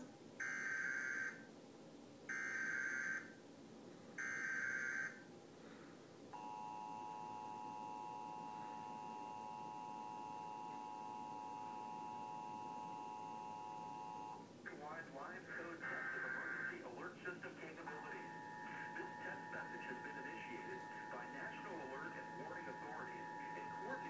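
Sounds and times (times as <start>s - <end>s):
digital header bursts: 18.0s - 24.0s.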